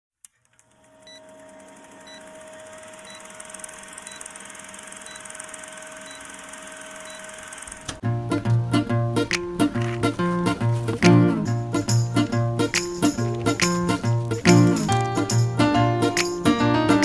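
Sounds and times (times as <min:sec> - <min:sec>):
plucked-string music with beat: 0:08.0 - 0:17.0.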